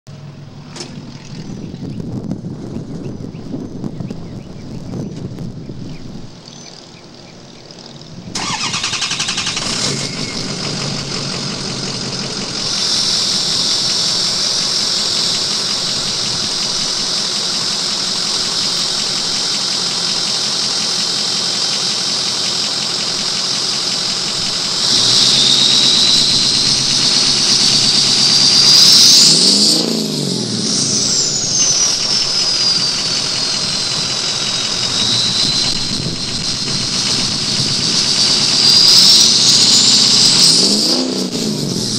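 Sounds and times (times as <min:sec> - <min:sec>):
diesel engine revving: 0:00.1 - 0:41.9
turbo whistle: 0:24.7 - 0:29.6, 0:30.6 - 0:40.8.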